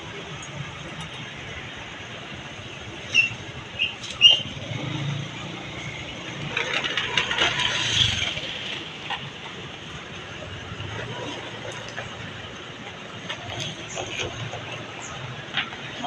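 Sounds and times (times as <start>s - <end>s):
road traffic: 0.0s - 16.0s.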